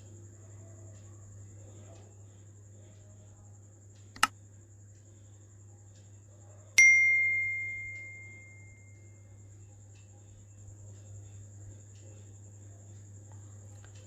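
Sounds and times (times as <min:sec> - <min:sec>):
sharp click: 0:04.2 - 0:04.4.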